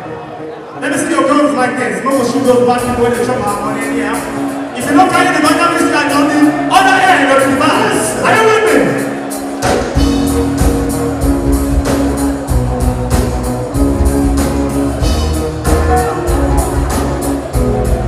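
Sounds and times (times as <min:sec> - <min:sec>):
guitar: 0:04.2 - 0:18.0
steady drum beat: 0:06.8 - 0:18.0
bass line: 0:09.6 - 0:18.0.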